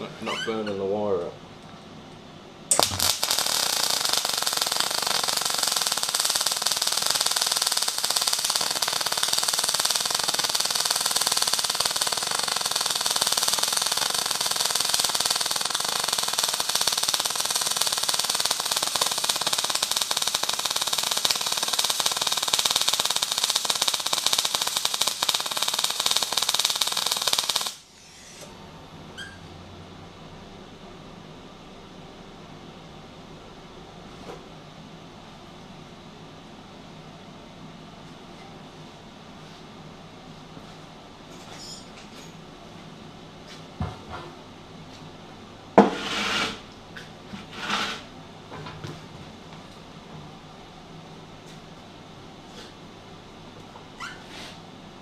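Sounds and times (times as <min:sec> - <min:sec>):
faint low welder hum: 0:00.0 - 0:34.6
welding arc crackling: 0:02.7 - 0:28.5.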